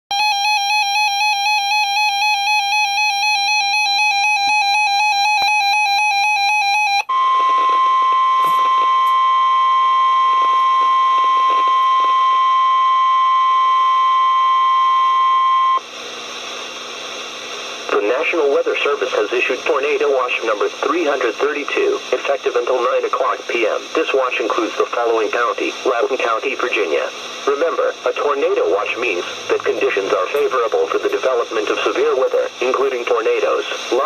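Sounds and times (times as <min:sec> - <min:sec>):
steady warning alarm tone: 0:00.1 - 0:15.9, 0:27.6 - 0:34.0
warbling electronic alert tone: 0:02.0 - 0:13.9.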